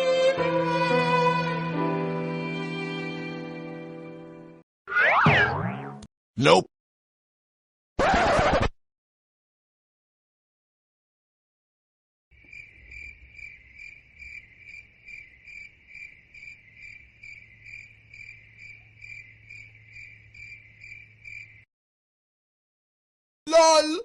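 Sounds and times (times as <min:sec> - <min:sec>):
crickets chirping: 0:12.3 - 0:21.7.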